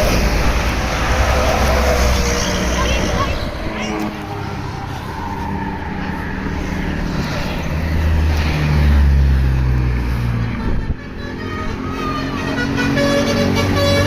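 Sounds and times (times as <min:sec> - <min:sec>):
bus engine approaching: 0:00.0 - 0:14.0.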